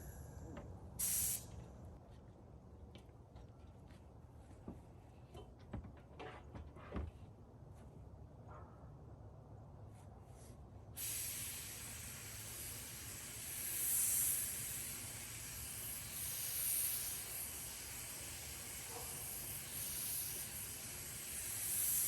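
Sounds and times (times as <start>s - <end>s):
paint spray gun hissing: 1.0s - 1.5s, 11.0s - 22.0s.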